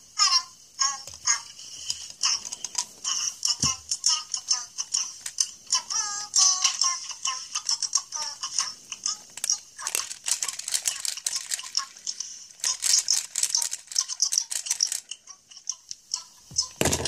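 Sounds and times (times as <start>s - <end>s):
toys rattling and clicking: 1.8s - 3.8s, 6.4s - 17.0s.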